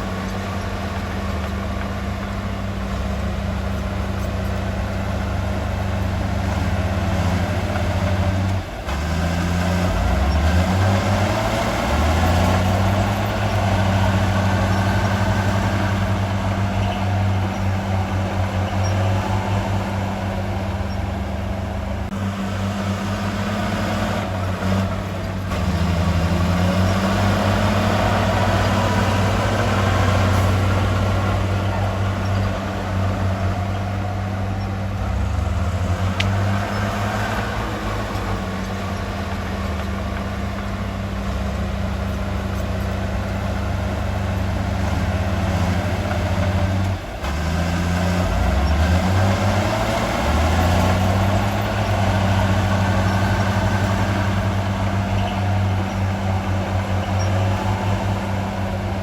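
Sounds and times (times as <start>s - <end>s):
diesel engine revving: 0.0s - 59.0s.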